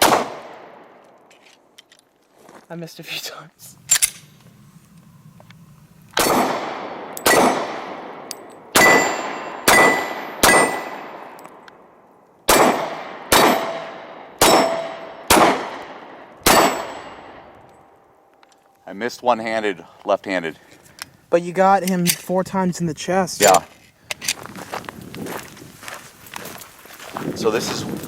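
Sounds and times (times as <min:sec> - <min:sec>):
pistol shots: 0:00.0 - 0:01.0, 0:06.2 - 0:11.6, 0:12.5 - 0:17.5
steel targets ringing: 0:08.7 - 0:11.2, 0:13.4 - 0:15.1.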